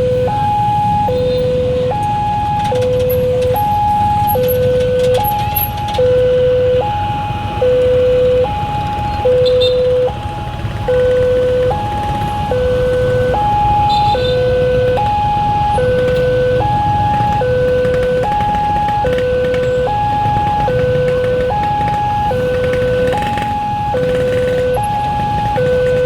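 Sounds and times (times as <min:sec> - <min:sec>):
two-tone crossing alarm siren: 0:00.0 - 0:26.0.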